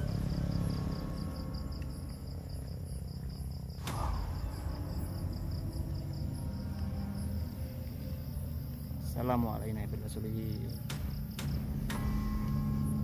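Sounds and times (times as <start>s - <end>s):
low rumble: 0.0s - 9.2s
crickets chirping: 0.0s - 13.0s.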